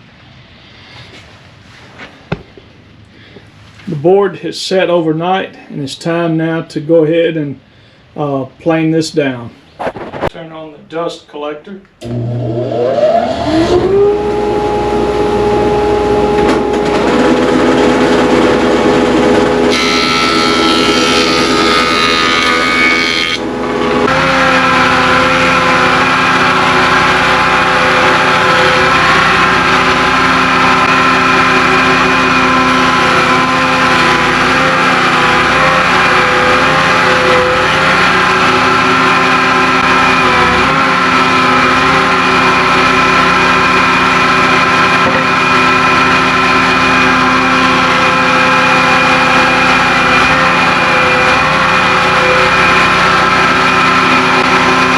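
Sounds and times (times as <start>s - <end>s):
dust collector running: 12.0s - 54.9s
planer motor whine: 12.0s - 54.9s.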